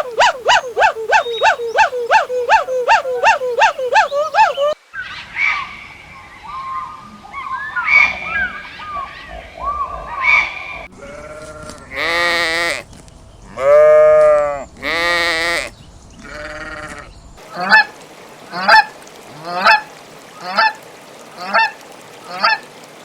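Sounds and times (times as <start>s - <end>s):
high chirping calls: 0.0s - 4.8s
sheep bleating: 11.0s - 12.6s, 16.2s - 17.1s.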